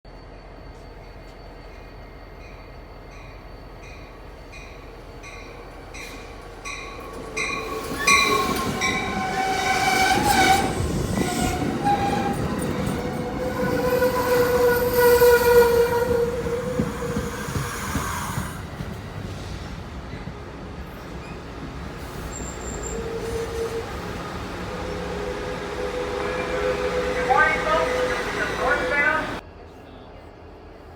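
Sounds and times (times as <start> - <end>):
train rumbling past: 0.1 - 30.9
train horn blasts: 8.0 - 17.0, 22.8 - 29.4.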